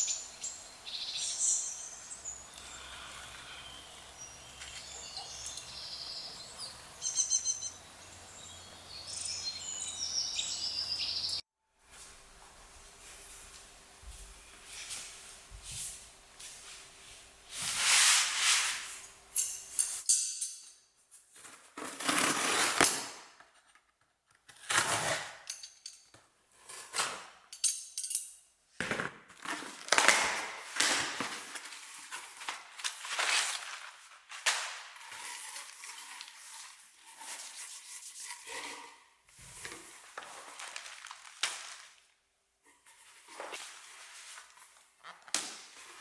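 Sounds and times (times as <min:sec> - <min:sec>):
paper and packaging rustling: 0:29.4 - 0:42.2.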